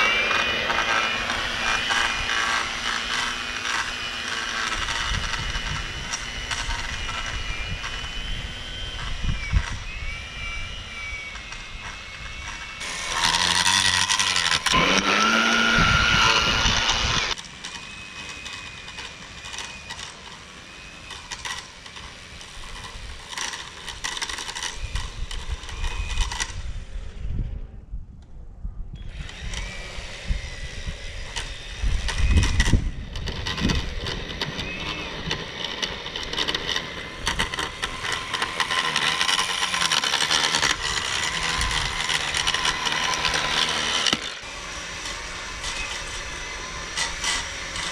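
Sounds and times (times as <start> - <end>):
electric edger motor whine: 0.0 - 27.9, 28.9 - 47.9.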